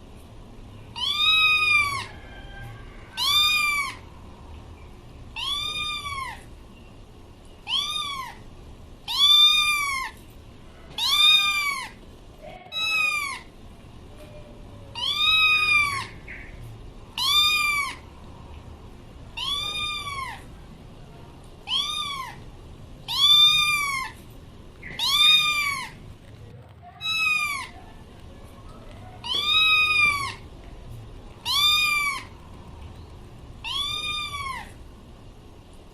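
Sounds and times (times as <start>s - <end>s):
cat meowing: 0.9s - 4.1s, 5.3s - 6.5s, 7.6s - 13.6s, 14.2s - 18.1s, 19.2s - 24.2s, 24.8s - 26.2s, 26.8s - 32.5s, 33.6s - 34.8s.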